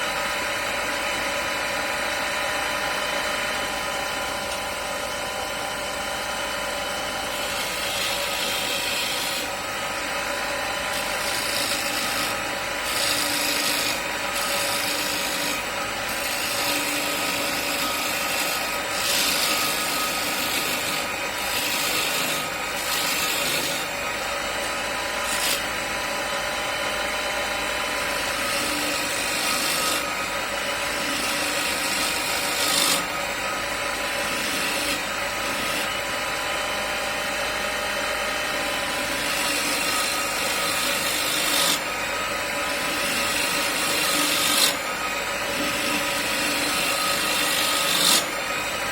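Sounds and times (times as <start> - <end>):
lathe motor hum: 0.0 - 48.9
gouge rasping wood: 4.0 - 25.9, 28.0 - 36.2, 38.8 - 48.9.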